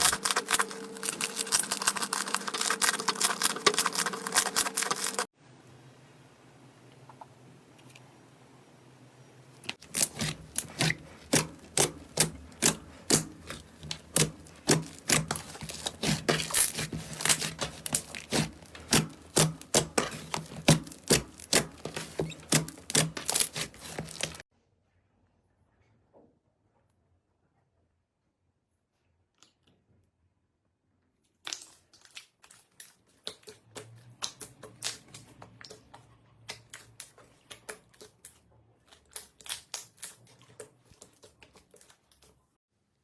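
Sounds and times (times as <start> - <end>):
slime squished by hand: 0.0 - 5.2, 9.6 - 24.4.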